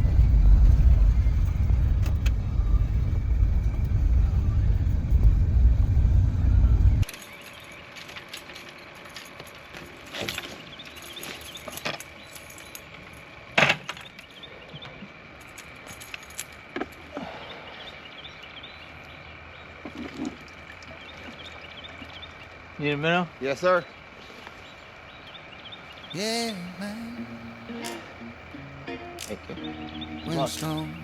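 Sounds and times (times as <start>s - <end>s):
vehicle road rumble: 0.0s - 7.1s.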